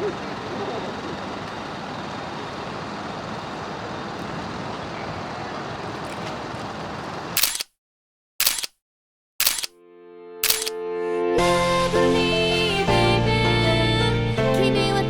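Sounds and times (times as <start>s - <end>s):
heavy vehicles driving by: 0.0s - 7.4s.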